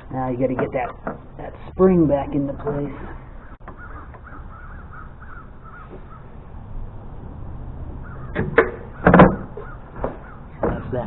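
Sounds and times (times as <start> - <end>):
faint birds chirping: 0.0 - 11.0
metal clanks and knocks: 0.4 - 1.5, 8.3 - 11.0.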